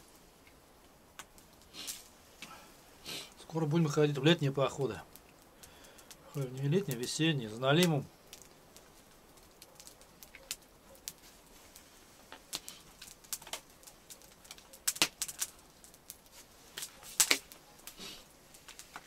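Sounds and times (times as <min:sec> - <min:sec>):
campfire crackling and popping: 0:00.0 - 0:19.0.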